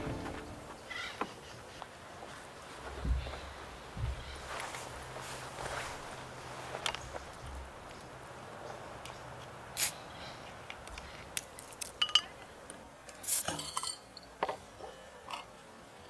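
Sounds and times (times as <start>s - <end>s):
background hiss: 0.0s - 6.5s, 9.6s - 15.0s.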